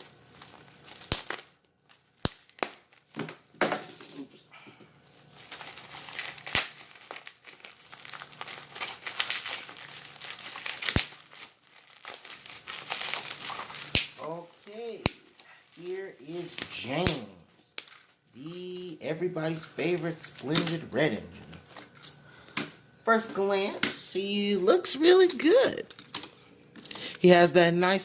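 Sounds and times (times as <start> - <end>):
bubble wrap crinkling: 0.0 - 3.5, 5.0 - 23.5
bubble wrap pops: 0.4 - 3.5, 5.4 - 14.3, 15.0 - 15.5, 16.4 - 18.1.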